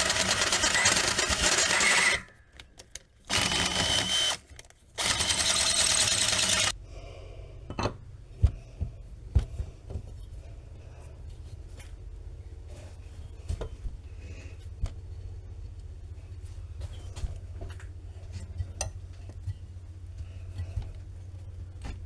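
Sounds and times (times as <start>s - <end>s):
electric drill boring steel: 0.0s - 2.3s, 3.3s - 4.4s, 5.0s - 6.8s.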